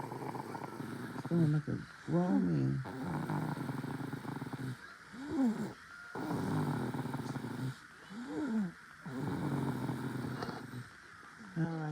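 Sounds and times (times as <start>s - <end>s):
baby snoring: 2.8s - 10.9s.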